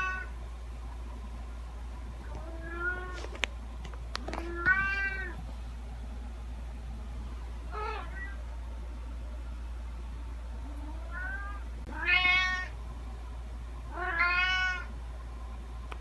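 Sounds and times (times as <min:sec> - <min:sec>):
cat meowing: 0:00.0 - 0:00.3, 0:02.4 - 0:03.2, 0:04.4 - 0:05.4, 0:07.7 - 0:08.4, 0:10.9 - 0:12.7, 0:13.9 - 0:14.9.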